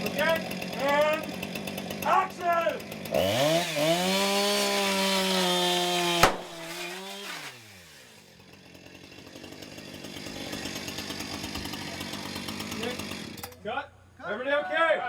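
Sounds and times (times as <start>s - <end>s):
chainsaw running: 0.0s - 13.8s
sharp bang: 6.2s - 6.5s.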